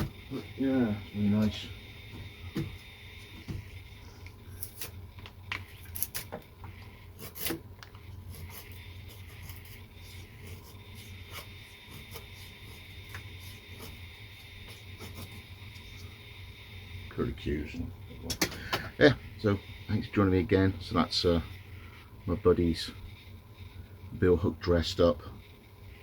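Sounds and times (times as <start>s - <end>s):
steady low hum: 0.0s - 26.0s
faint rubbing and scraping: 5.6s - 18.0s.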